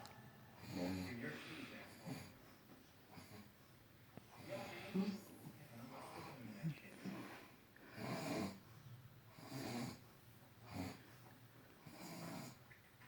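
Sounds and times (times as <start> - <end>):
man snoring: 7.9 - 8.6, 9.3 - 10.0, 10.6 - 11.0, 11.8 - 12.6.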